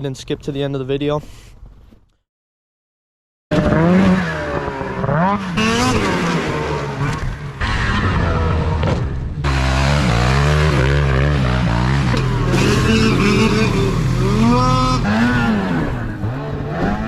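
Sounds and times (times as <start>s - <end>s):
snowmobile engine revving: 3.5s - 17.0s.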